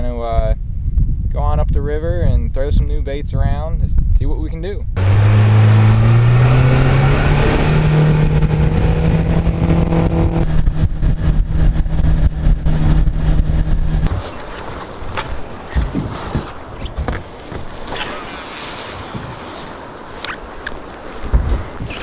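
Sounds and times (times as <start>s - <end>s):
jet boat engine revving: 5.0s - 14.7s.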